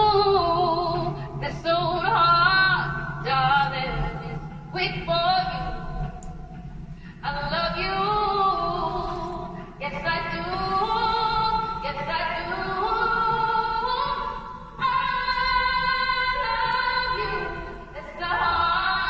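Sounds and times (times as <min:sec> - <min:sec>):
backing music: 0:00.0 - 0:19.0
person singing soul vocals: 0:07.2 - 0:19.0.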